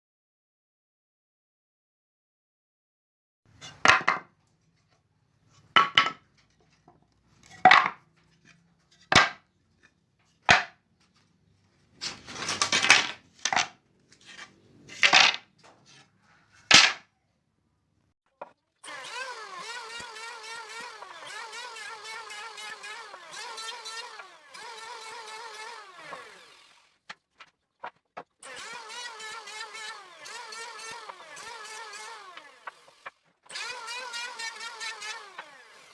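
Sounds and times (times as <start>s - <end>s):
wood pieces knocking: 3.6s - 4.4s, 5.6s - 9.4s, 10.4s - 10.8s, 11.9s - 16.0s, 16.6s - 17.1s
power tool whine: 18.8s - 27.0s, 28.4s - 35.9s.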